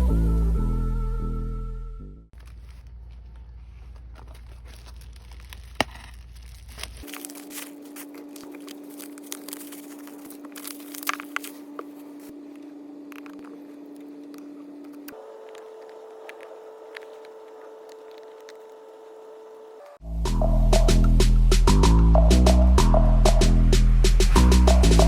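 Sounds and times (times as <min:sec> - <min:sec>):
steady low hum: 0:00.0 - 0:24.8
plastic and paper crinkling: 0:02.4 - 0:18.8.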